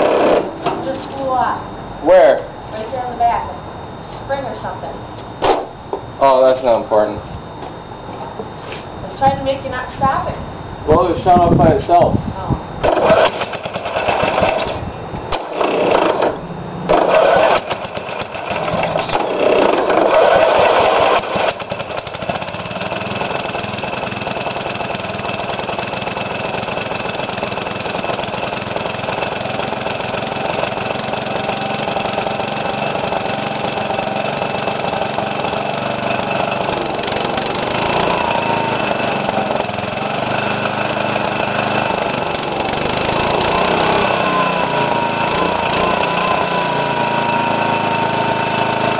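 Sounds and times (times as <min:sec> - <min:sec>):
lawn mower engine running: 0:00.0 - 0:01.3, 0:12.8 - 0:48.9.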